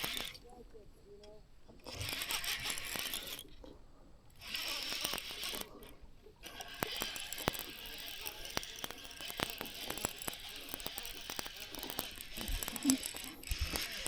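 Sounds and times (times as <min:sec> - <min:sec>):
fishing reel clicking: 0:00.0 - 0:00.4, 0:01.8 - 0:03.7, 0:04.3 - 0:14.0
steady high hiss: 0:04.2 - 0:14.0.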